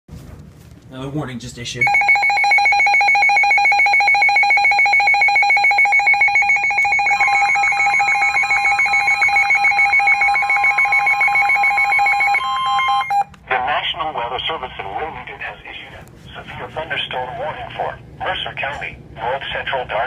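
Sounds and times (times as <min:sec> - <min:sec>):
pulsing electronic alert tone: 0:01.8 - 0:13.2.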